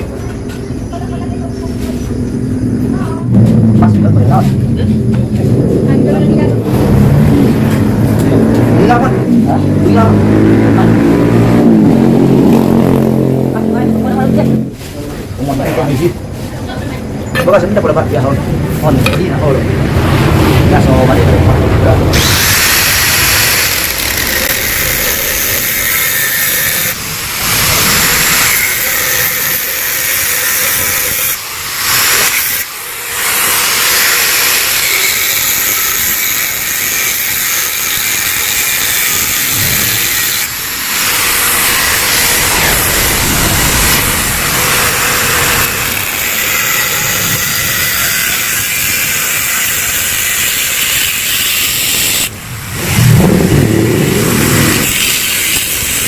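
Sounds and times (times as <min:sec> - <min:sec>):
power tool grinding metal: 0:22.1 - 0:53.0, 0:54.2 - 0:56.0.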